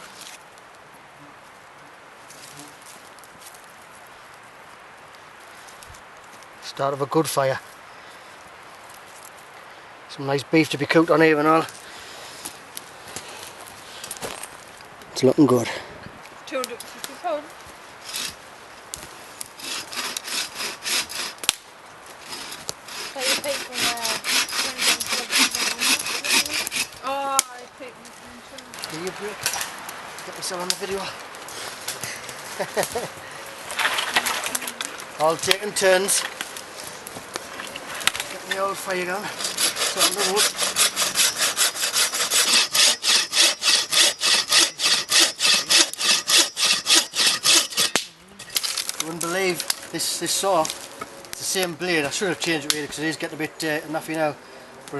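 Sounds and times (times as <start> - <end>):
hand saw cutting log: 18.0 - 18.4, 19.6 - 21.6, 22.2 - 27.2, 38.5 - 49.0.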